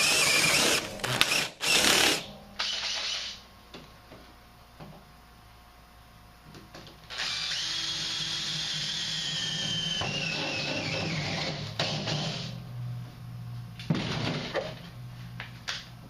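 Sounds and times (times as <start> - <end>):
impact driver whining: 0.0 - 3.4.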